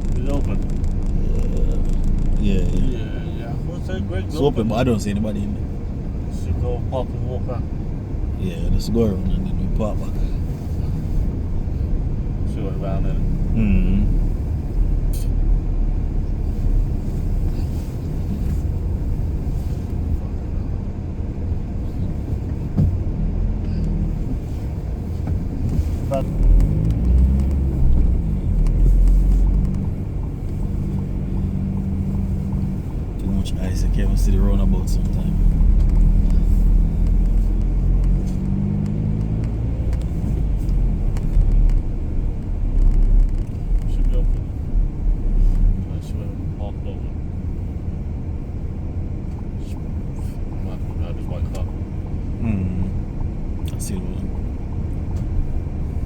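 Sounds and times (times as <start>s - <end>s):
van engine and tyres rumbling: 0.0s - 56.0s.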